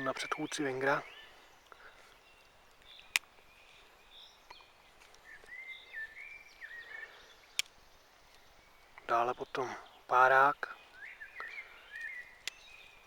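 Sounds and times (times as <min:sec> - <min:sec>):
faint whistling bird calls: 0:00.0 - 0:13.0
pocketknife sharp clicks: 0:07.5 - 0:07.8.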